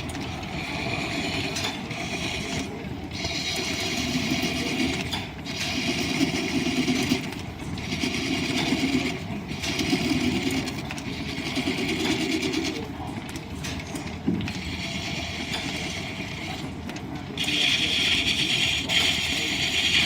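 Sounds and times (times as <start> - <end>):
wood lathe running: 0.5 - 12.8, 17.4 - 20.0
turning tool cutting wood: 17.4 - 20.0.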